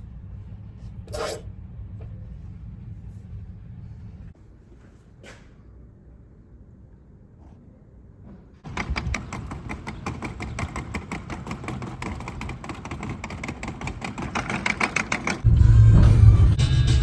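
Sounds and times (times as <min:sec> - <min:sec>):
loud low rumble: 0:15.5 - 0:17.0.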